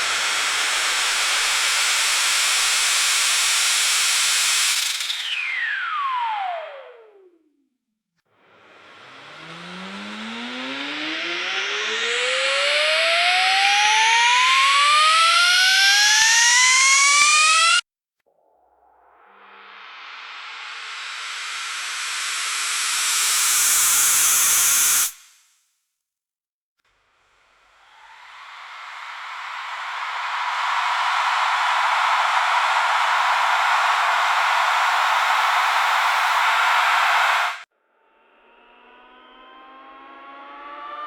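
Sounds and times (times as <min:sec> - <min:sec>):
dental chair rising hiss: 0:27.9 - 0:37.6.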